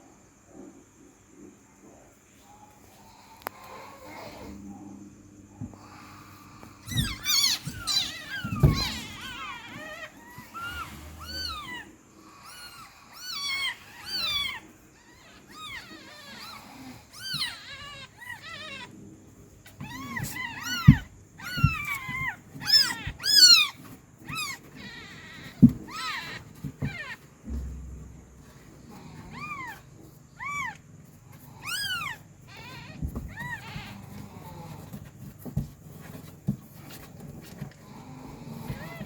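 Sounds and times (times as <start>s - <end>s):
kittens mewing: 5.6s - 19.0s, 19.6s - 36.2s
soft bumps: 6.5s - 11.8s, 25.4s - 31.9s.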